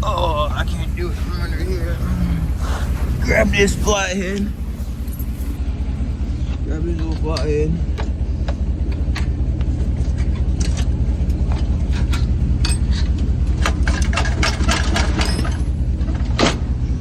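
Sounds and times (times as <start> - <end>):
diesel truck engine idling: 0.0 - 17.0
metal tools clinking: 2.8 - 5.6, 11.9 - 15.9.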